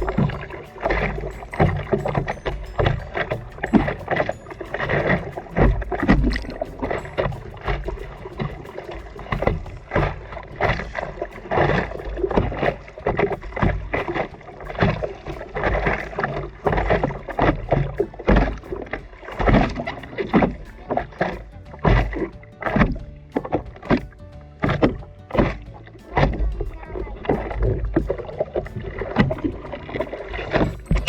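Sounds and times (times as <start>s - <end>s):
seawater splashing: 0.0s - 31.0s.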